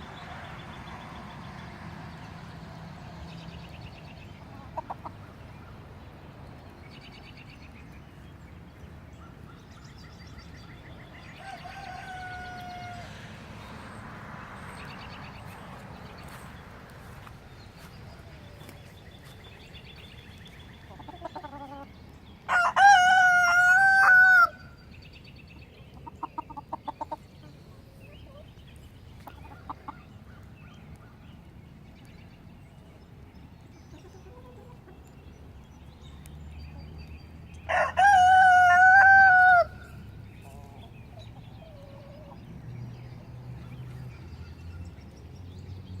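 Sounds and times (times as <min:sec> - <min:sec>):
chickens clucking: 0:04.3 - 0:05.8, 0:15.2 - 0:21.9, 0:25.9 - 0:30.3, 0:33.9 - 0:35.1, 0:40.4 - 0:42.6
rooster crowing: 0:11.4 - 0:13.2, 0:22.5 - 0:24.6, 0:37.7 - 0:39.9.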